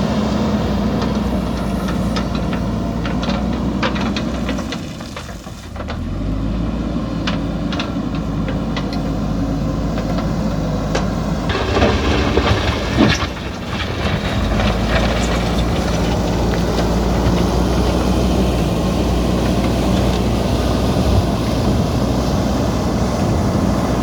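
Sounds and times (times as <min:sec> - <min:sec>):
diesel engine running: 0:00.0 - 0:24.0
bucket clanking on soil and stone: 0:10.9 - 0:20.3.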